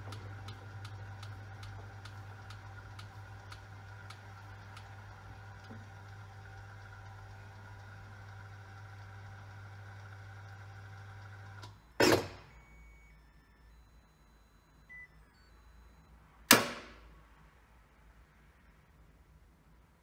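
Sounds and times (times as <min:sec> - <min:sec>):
washing machine humming: 0:00.0 - 0:13.1.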